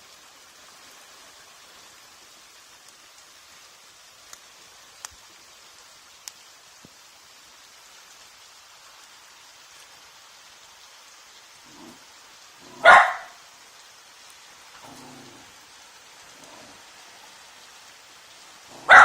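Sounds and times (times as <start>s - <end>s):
heavy rain falling: 0.0s - 19.0s
raindrops ticking: 2.6s - 19.0s
dog barking: 11.7s - 12.0s, 12.6s - 13.4s, 14.8s - 15.5s, 16.3s - 16.8s, 18.7s - 19.0s.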